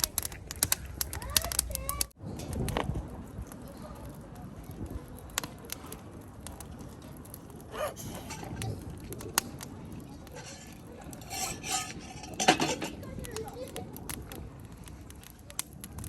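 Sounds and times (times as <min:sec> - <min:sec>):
metal parts clinking and scraping: 0:10.3 - 0:13.0.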